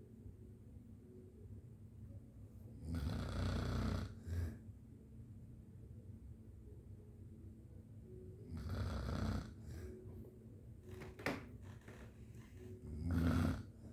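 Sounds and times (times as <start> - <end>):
man snoring: 2.8 - 4.6, 8.5 - 9.9, 12.9 - 13.8.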